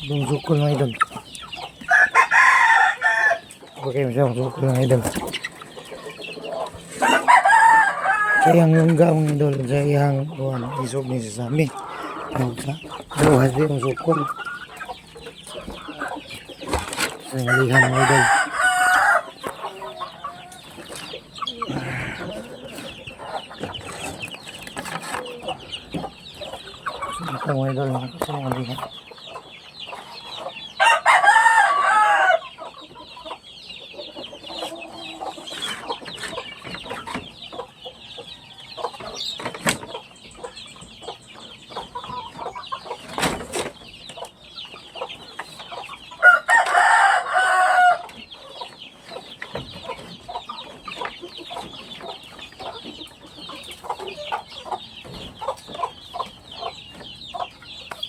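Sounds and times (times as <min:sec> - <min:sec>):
chickens clucking: 0:00.0 - 0:58.0
rooster crowing: 0:01.9 - 0:03.5, 0:07.0 - 0:08.8, 0:17.4 - 0:19.4, 0:30.8 - 0:32.5, 0:46.2 - 0:48.1.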